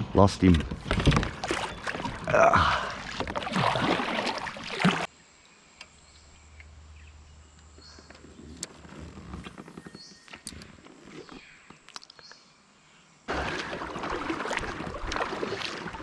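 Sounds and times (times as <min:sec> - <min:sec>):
splashing around a kayak: 0:00.8 - 0:05.1, 0:13.3 - 0:16.0.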